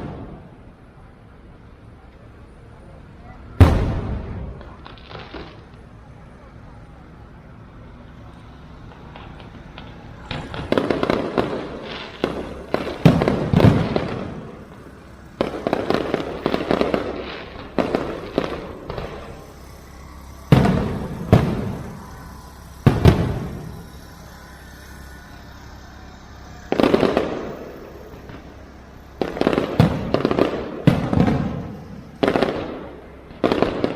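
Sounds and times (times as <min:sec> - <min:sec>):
heavy firework booms: 0:00.0 - 0:00.7, 0:03.6 - 0:05.7, 0:09.1 - 0:24.0, 0:26.7 - 0:33.9
fireworks banging and crackling: 0:00.0 - 0:33.9.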